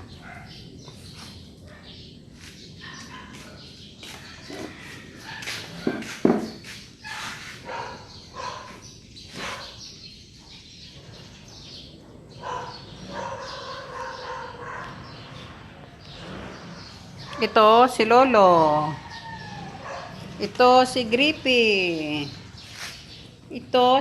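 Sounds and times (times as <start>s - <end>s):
dogs whining and yipping: 12.4s - 15.0s, 19.1s - 20.3s.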